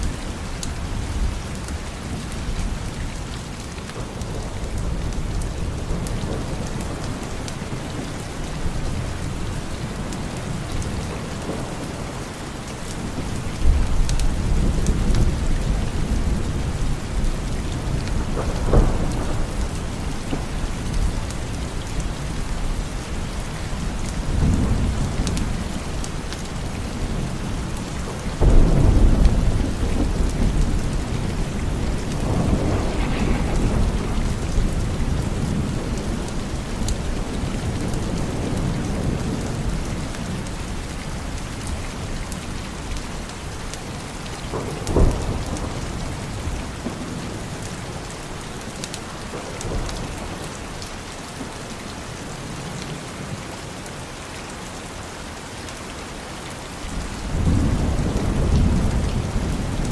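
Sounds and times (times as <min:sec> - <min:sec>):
steady rain: 0:00.0 - 0:59.9
thunder rumbling: 0:04.0 - 0:50.8, 0:56.9 - 0:59.9
sharp thunderclap: 0:13.6 - 0:21.6, 0:28.4 - 0:40.5, 0:44.4 - 0:47.6, 0:56.9 - 0:59.9.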